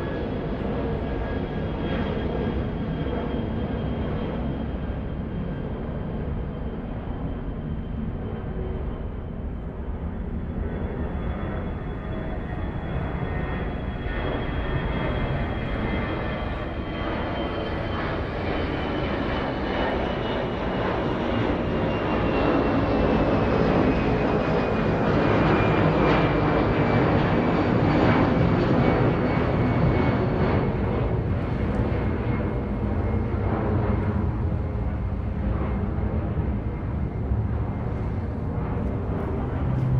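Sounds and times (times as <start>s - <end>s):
airplane engines passing by: 0.0s - 39.9s.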